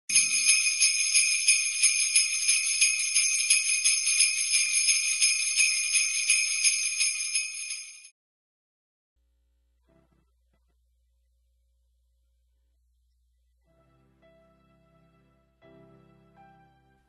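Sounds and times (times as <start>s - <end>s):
jingle bells shaken: 0.1s - 8.1s.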